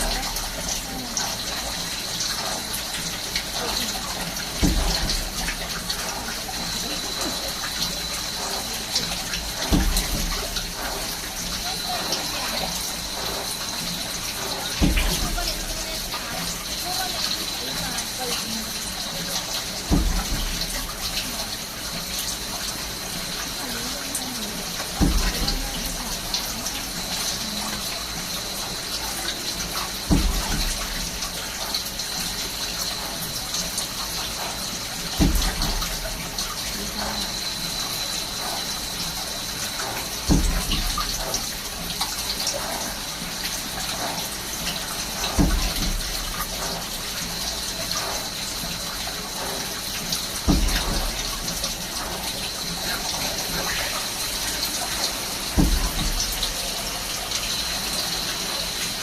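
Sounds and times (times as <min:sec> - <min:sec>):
coolant spraying hiss: 0:00.0 - 0:59.0.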